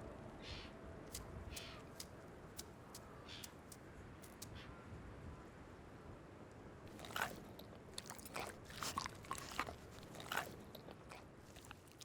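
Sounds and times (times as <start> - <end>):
fox crunching wet bites: 6.9 - 12.0.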